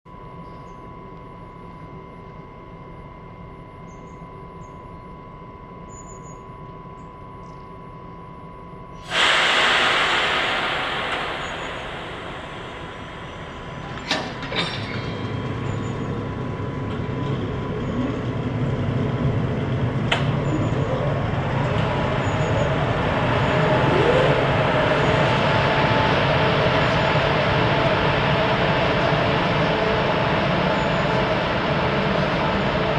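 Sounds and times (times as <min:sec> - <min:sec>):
freight train wagons rumbling: 0:09.1 - 0:32.9.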